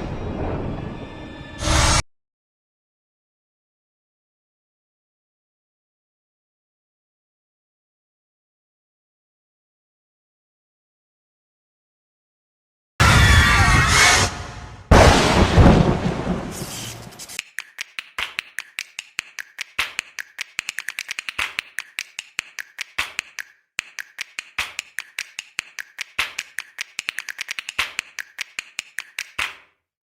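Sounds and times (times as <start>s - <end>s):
sharp clicks or taps: 17.4s - 29.7s.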